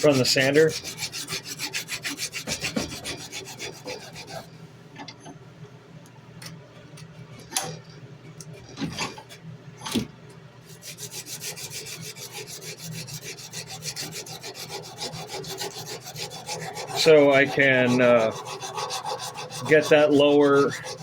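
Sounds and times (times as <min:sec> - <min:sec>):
sandpaper rubbing on steel blade: 0:00.0 - 0:04.5, 0:10.7 - 0:21.0.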